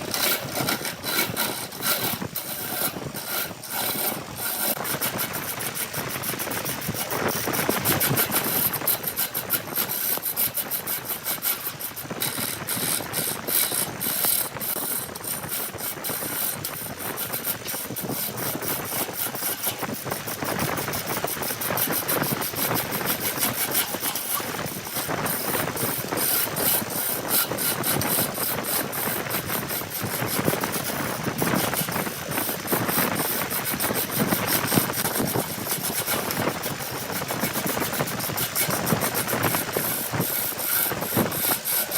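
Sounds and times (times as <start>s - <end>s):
cutting machine rattling through wood: 0.0s - 41.9s.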